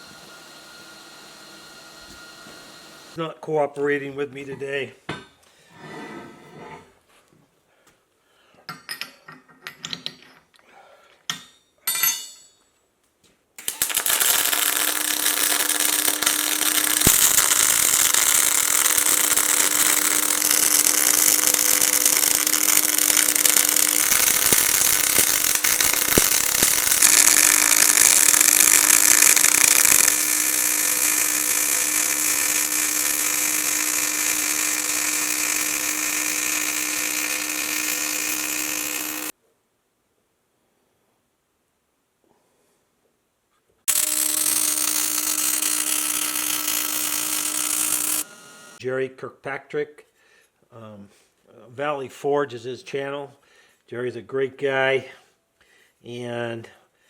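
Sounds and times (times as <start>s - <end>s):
power tool on steel: 0.0s - 3.2s, 13.6s - 39.3s, 43.9s - 48.8s.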